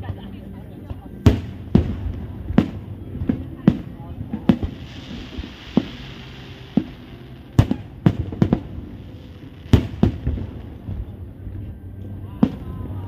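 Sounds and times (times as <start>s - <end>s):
fireworks bangs: 1.2s - 11.2s.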